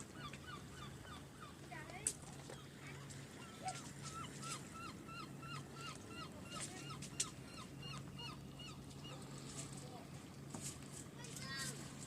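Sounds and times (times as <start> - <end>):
gull calling: 0.0 - 1.7, 2.8 - 9.3.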